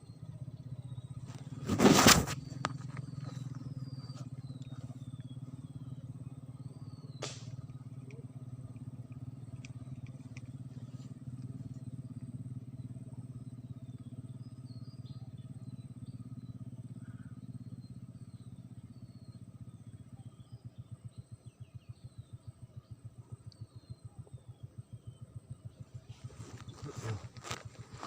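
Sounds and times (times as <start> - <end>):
small engine droning: 0.0 - 28.0
sharp click: 7.1 - 8.2.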